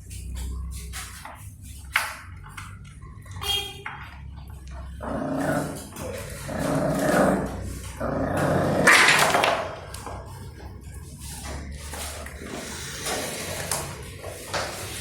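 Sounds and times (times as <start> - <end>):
puppies growling: 4.8 - 14.4.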